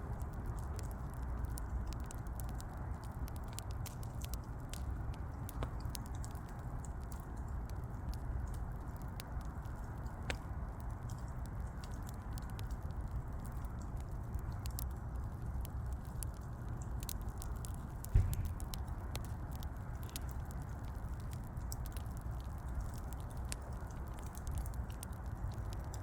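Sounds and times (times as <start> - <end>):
firewood crackling: 0.0 - 26.0
low rumble: 18.0 - 19.5
loud pop: 18.1 - 18.8.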